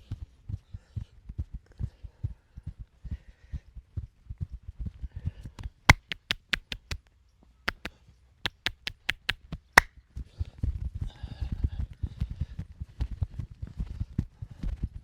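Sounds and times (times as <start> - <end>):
sharp massage smacks: 5.9 - 7.0, 7.7 - 7.9, 8.5 - 9.4.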